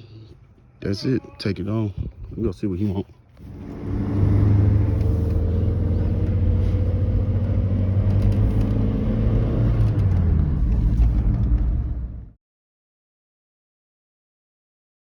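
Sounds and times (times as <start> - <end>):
truck engine running: 3.4 - 12.4.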